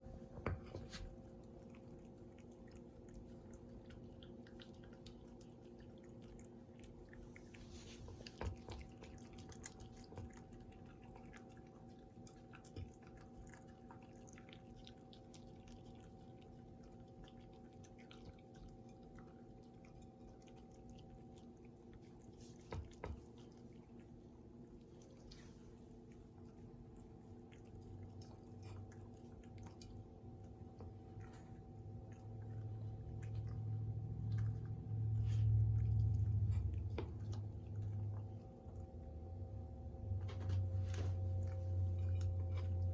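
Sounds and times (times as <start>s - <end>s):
steady low hum: 0.0s - 42.9s
dog chewing wet smacking: 0.2s - 39.5s.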